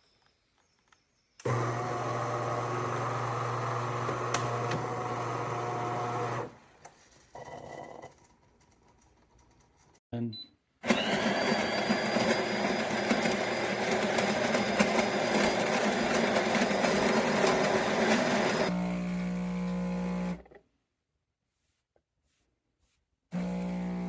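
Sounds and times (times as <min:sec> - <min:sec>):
espresso machine whirring: 0:01.4 - 0:06.5, 0:10.8 - 0:20.5, 0:23.4 - 0:24.0.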